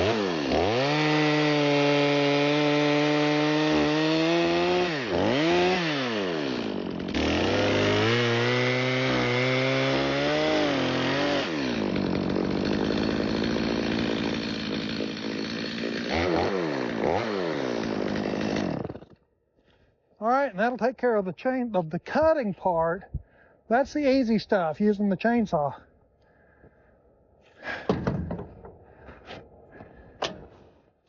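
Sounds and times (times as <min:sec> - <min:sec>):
chainsaw sawing through log: 0:00.0 - 0:19.2.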